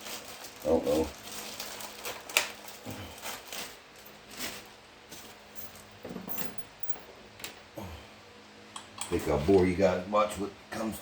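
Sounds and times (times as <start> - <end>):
handling rustle: 0.0 - 7.1
metallic clinks and jingles: 5.5 - 7.1.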